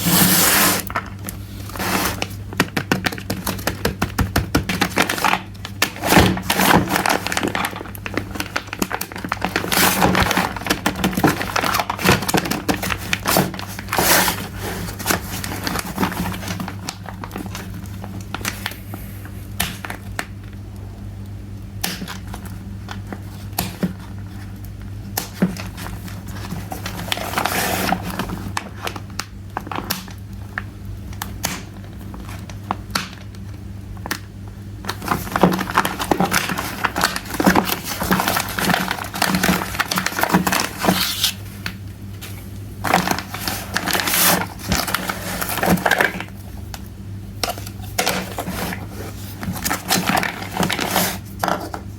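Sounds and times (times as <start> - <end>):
plastic packaging crinkling: 0.0 - 18.8, 25.4 - 30.6, 31.7 - 51.9
low electrical hum: 0.0 - 51.9.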